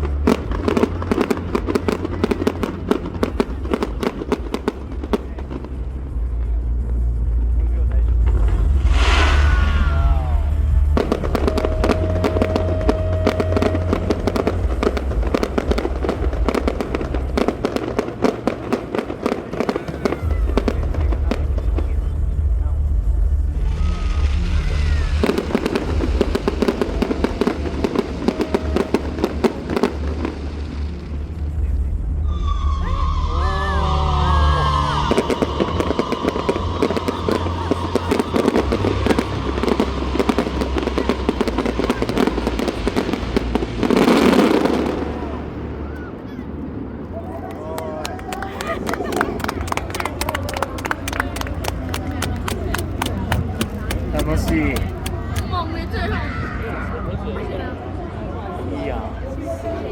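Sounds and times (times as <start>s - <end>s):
low rumble: 0.0s - 59.6s
fireworks crackling: 0.0s - 59.9s.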